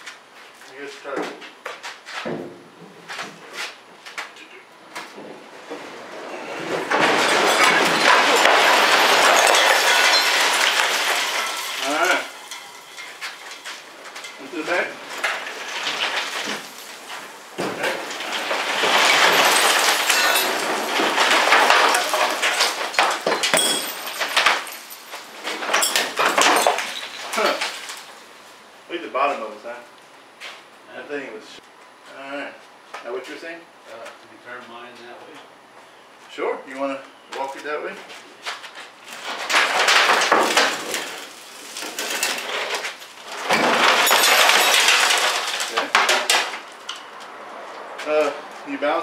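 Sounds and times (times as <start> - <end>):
scraping and shuffling of truck bed: 5.0 - 28.1
knocks and clinks on steel: 21.5 - 27.7
high metallic rings: 23.3 - 27.6.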